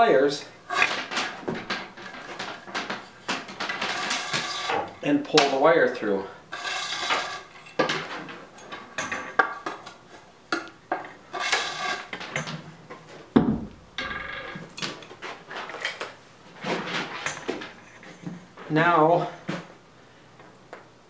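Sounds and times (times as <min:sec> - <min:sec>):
nail scoring wire insulation: 0:00.6 - 0:05.6, 0:06.5 - 0:12.5
heavy thump: 0:13.4 - 0:14.1.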